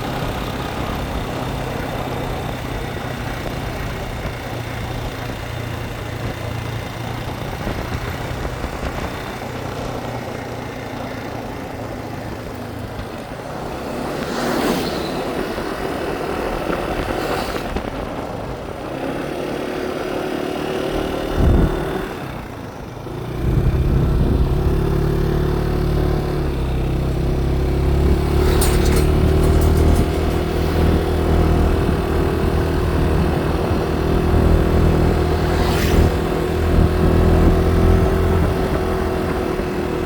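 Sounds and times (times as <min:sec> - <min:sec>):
motorbike engine running: 0:00.0 - 0:40.0
road noise: 0:00.0 - 0:40.0.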